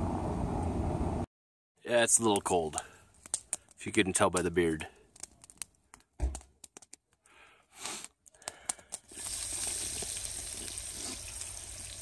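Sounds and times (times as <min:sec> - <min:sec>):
food sizzling in a frying pan: 0:09.1 - 0:12.0.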